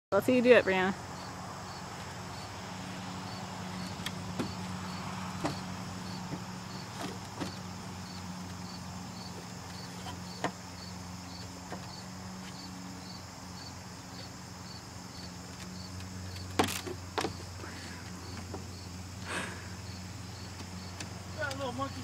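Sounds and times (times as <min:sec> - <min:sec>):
loud thumps: 0:04.3 - 0:04.7, 0:05.4 - 0:07.6
knocks on monkey bars: 0:05.4 - 0:05.6.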